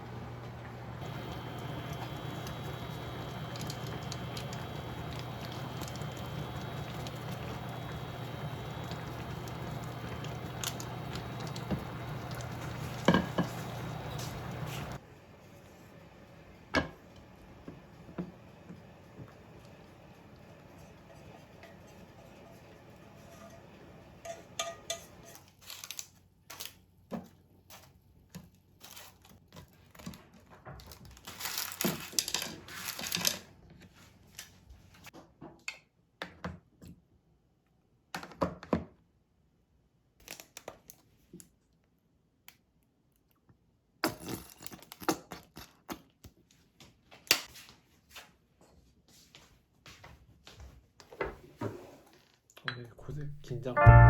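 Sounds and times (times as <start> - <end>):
crinkling and tearing: 25.4 - 26.8, 27.8 - 33.5.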